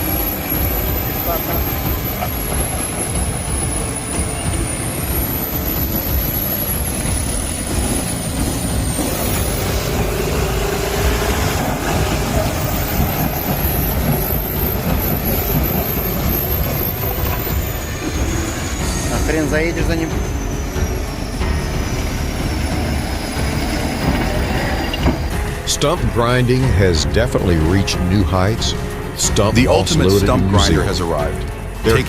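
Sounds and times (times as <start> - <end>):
heavy vehicle engine rumbling: 0.0 - 32.0.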